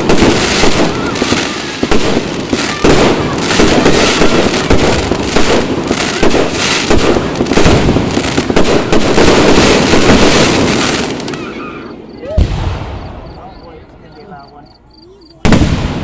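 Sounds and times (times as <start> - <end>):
fireworks bangs: 0.0 - 16.0.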